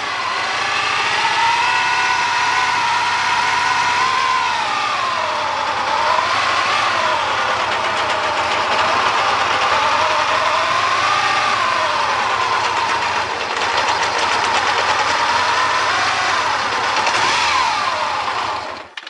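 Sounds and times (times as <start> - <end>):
motorcycle engine idling: 4.7 - 19.0.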